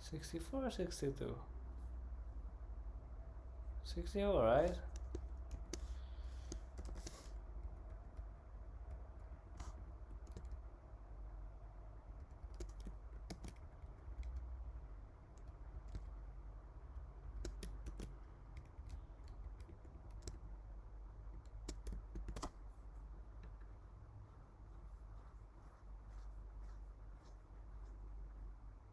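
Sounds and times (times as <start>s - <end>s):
steady low hum: 0.0s - 28.9s
computer keyboard typing: 4.6s - 10.6s, 12.1s - 14.5s, 15.3s - 16.2s, 17.0s - 20.5s, 21.3s - 22.6s.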